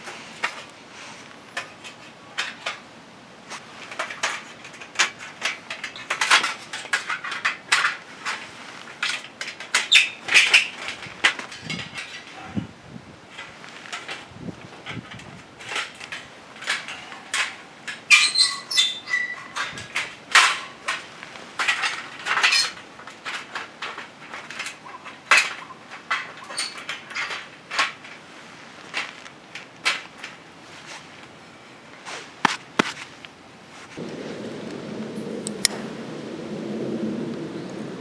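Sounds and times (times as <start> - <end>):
camp gear knocking and clinking: 3.5 - 12.5, 13.3 - 28.3, 32.4 - 33.2.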